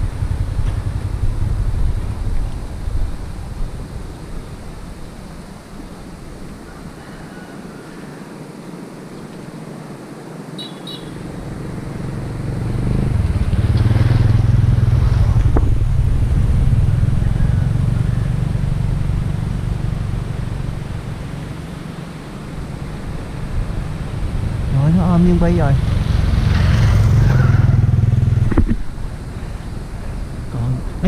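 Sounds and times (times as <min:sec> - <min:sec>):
motor vehicle engine droning: 0:00.0 - 0:04.6, 0:10.8 - 0:31.0.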